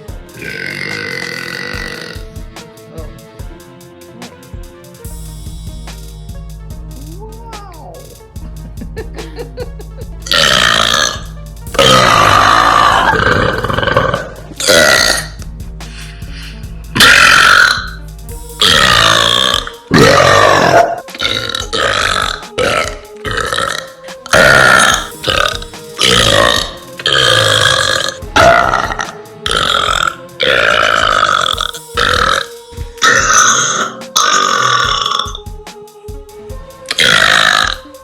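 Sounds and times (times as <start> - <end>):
woman burping: 10.2 - 11.2, 11.8 - 15.4, 18.7 - 35.4.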